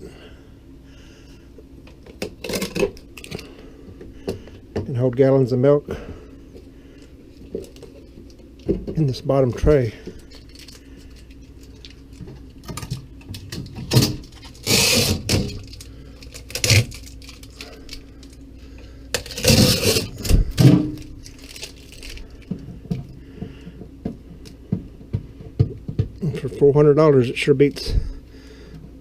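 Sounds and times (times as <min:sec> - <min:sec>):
refrigerator shelves rattling: 0:12.3 - 0:18.1, 0:19.2 - 0:22.8.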